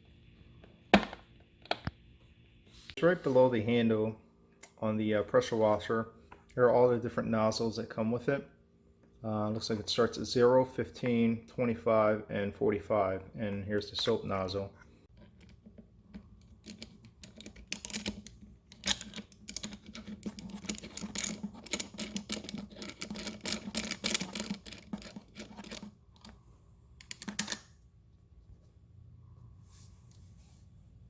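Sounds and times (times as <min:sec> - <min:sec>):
plastic parts clicking and clattering: 0:15.2 - 0:26.4.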